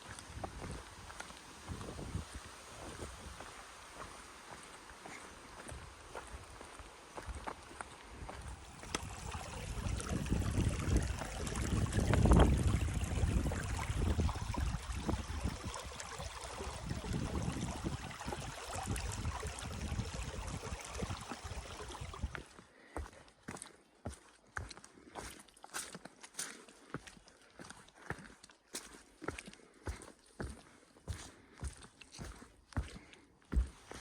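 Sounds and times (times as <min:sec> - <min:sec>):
rushing stream water: 0:00.0 - 0:24.2.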